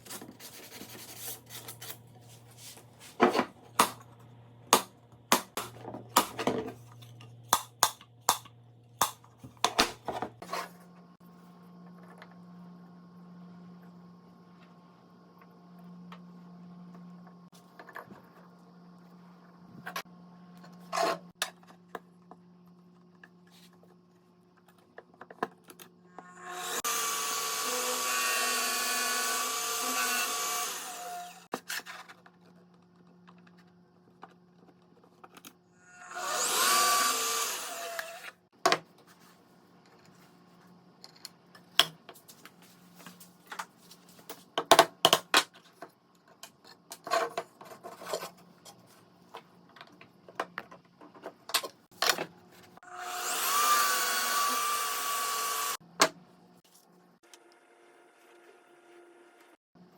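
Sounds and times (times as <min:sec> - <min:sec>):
small power tool on wood: 0:26.2 - 0:31.5, 0:35.8 - 0:38.4, 0:52.8 - 0:55.8.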